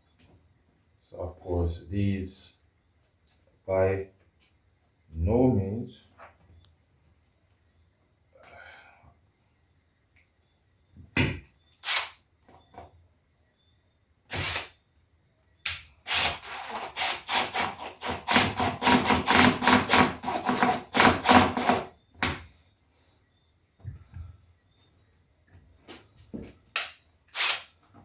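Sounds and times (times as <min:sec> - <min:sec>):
rapid grinding strokes: 0:16.1 - 0:21.9.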